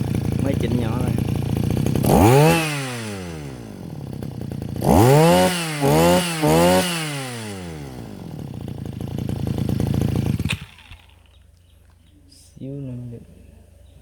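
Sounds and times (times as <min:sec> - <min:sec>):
brush cutter engine revving: 0:00.0 - 0:11.5.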